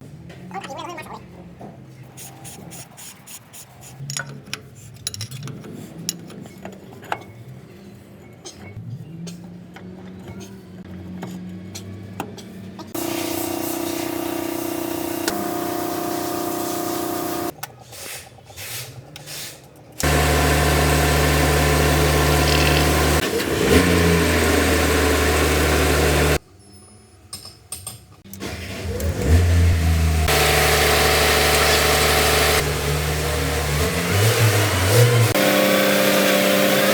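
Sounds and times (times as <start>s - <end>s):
truck engine running and revving: 8.8s - 17.5s, 20.0s - 26.4s, 28.3s - 36.9s.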